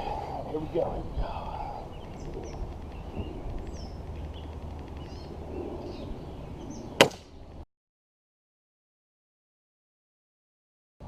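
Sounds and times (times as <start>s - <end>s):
birds chirping: 0.0s - 7.6s
pellet rifle shot: 7.0s - 7.3s.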